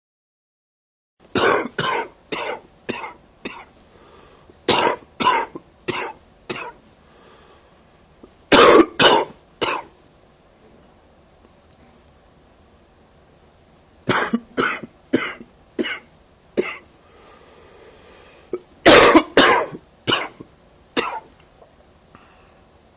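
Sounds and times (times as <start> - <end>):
person coughing: 1.4 - 3.7, 4.7 - 6.8, 8.5 - 10.0, 14.1 - 16.9, 18.8 - 21.3
faint breaths: 3.8 - 4.7, 6.9 - 8.1, 16.9 - 18.6, 22.1 - 22.8.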